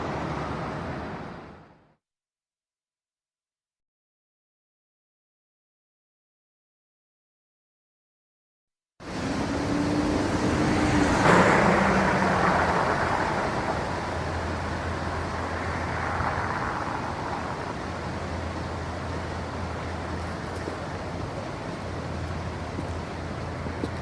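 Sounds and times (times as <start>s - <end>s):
city traffic rumble: 0.0s - 1.9s, 9.0s - 24.0s
vehicle passing close: 9.0s - 24.0s.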